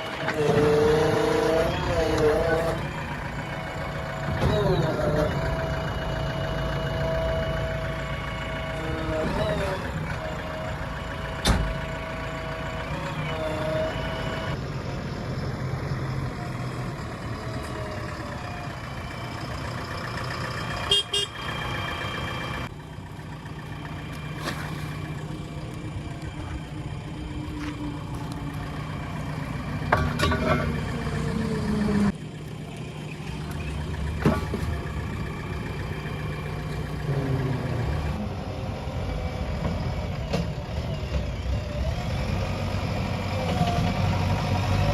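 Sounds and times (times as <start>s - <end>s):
diesel engine running: 0.0s - 44.9s
sharp knocks and clanks: 29.9s - 31.0s.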